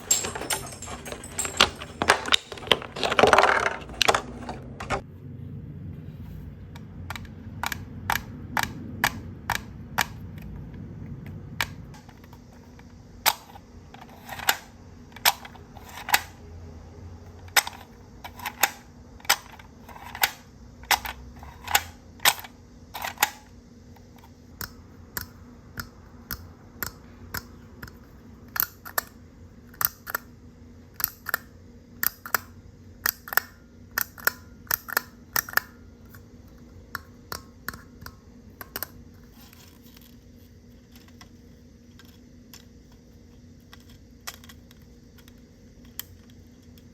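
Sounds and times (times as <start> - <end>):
plastic toy pieces clicking: 0.0 - 5.0, 31.0 - 35.7, 43.6 - 46.8.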